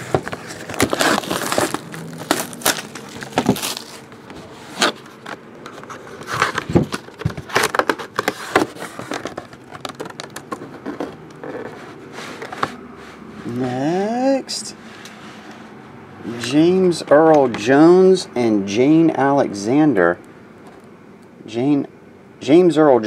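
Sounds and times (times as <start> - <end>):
plastic packaging crinkling: 0.0 - 12.6.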